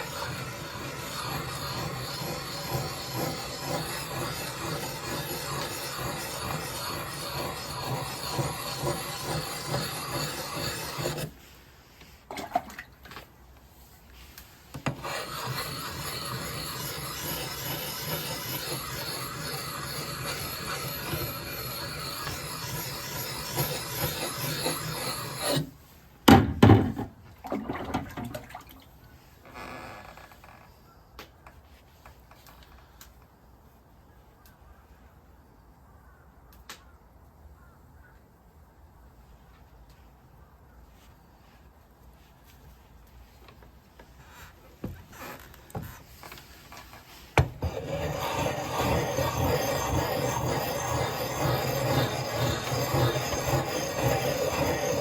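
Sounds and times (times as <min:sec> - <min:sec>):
rasping scraping noise: 0:00.0 - 0:12.3, 0:14.1 - 0:26.0, 0:44.1 - 0:55.0.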